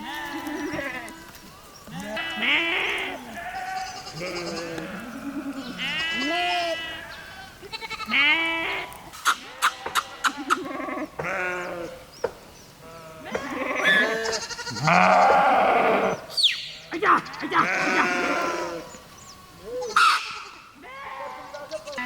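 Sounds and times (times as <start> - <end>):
sheep bleating: 0.0 - 1.2, 1.9 - 12.0, 12.8 - 19.0.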